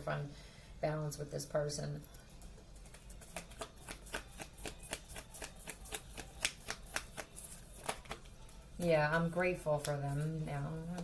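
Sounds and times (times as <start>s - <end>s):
cards being shuffled: 2.8s - 8.4s.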